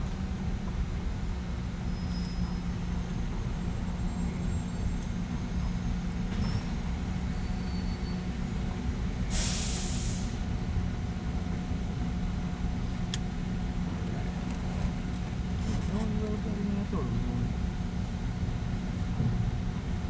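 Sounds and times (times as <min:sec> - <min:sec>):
low engine rumble: 0:00.0 - 0:20.0
air hiss burst: 0:09.3 - 0:10.4.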